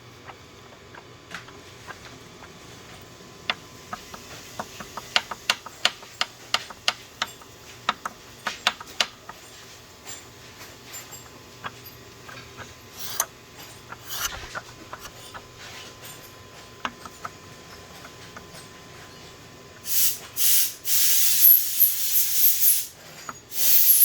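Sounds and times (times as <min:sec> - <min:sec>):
faint clicks and taps: 0:00.2 - 0:19.4
hissing spray bursts: 0:19.9 - 0:22.9, 0:23.5 - 0:24.0.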